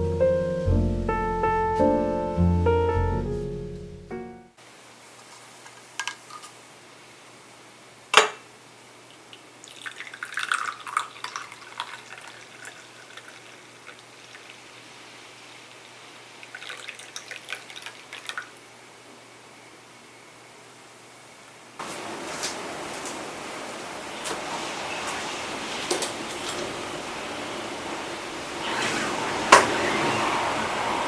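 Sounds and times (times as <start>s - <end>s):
faint steady hiss: 0.0s - 30.6s
kitchenware clinks and taps: 8.2s - 8.4s.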